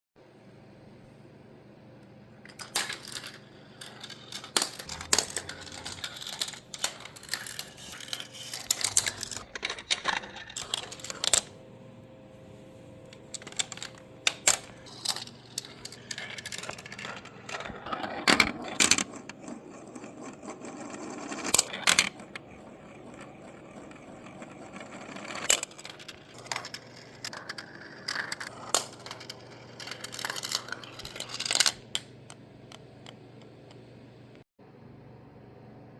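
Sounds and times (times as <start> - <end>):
marbles clicking on track: 2.6 - 11.5, 19.9 - 32.0
marbles rolling on plastic track: 2.6 - 11.5, 13.3 - 32.0.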